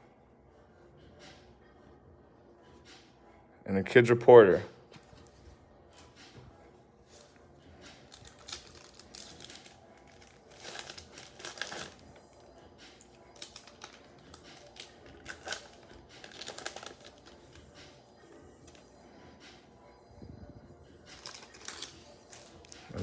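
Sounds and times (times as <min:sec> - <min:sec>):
wrapper crinkling and tearing: 0:07.9 - 0:17.7, 0:21.1 - 0:23.0.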